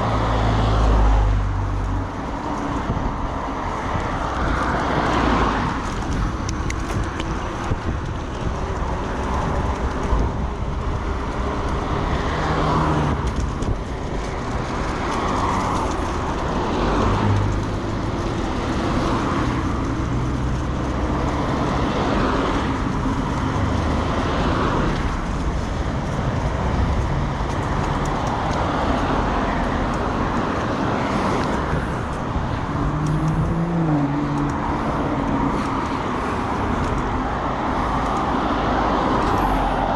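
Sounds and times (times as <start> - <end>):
road traffic rumble: 0.0 - 39.9
cyclist breathing hard: 34.6 - 38.3.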